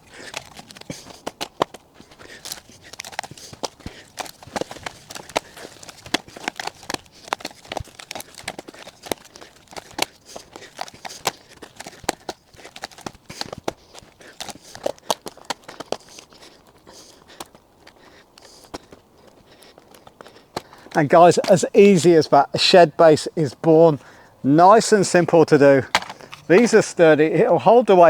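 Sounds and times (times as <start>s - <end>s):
plastic panels clicking and knocking: 25.9s - 26.7s.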